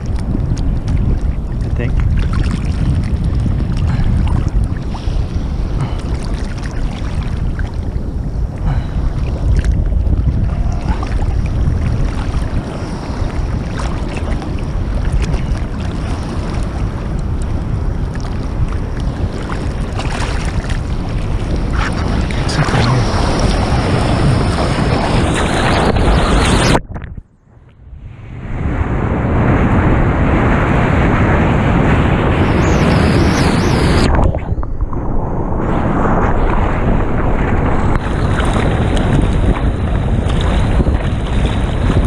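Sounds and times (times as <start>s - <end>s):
water splashes: 0.0s - 8.0s, 8.6s - 26.1s, 34.1s - 42.0s
ocean water sloshing: 0.0s - 26.1s, 34.1s - 42.0s
wind buffeting microphone: 0.0s - 42.0s.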